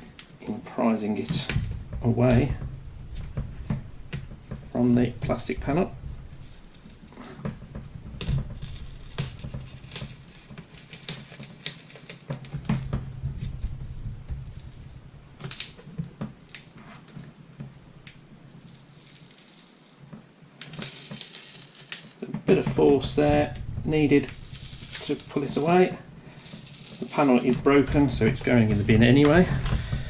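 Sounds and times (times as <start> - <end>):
plastic clicks and crackles: 8.2 - 12.8.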